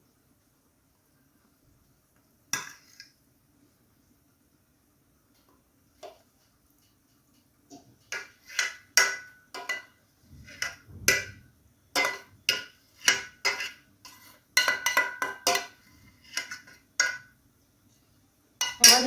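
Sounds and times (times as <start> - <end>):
spoon clinking against glasses: 18.6 - 19.0.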